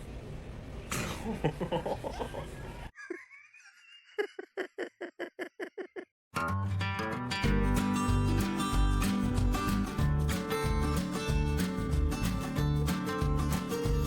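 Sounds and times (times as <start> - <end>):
person laughing: 1.0 - 6.2.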